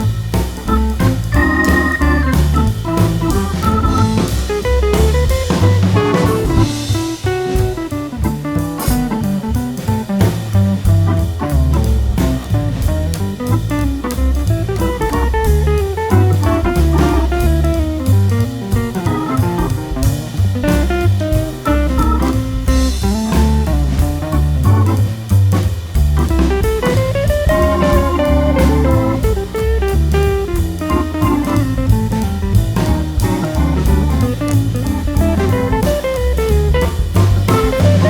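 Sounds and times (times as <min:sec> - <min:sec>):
instrumental music with steady beat: 0:00.0 - 0:38.0.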